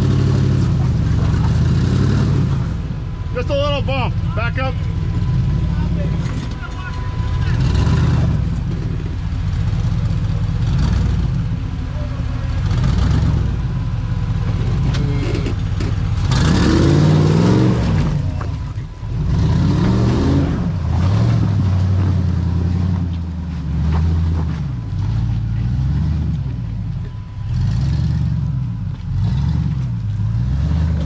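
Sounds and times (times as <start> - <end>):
off-road vehicle engine revving: 0.0 - 31.0.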